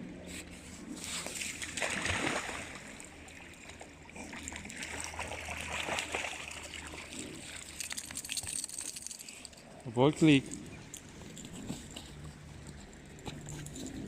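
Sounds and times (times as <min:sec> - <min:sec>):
water splashing and sloshing: 0:00.2 - 0:14.0.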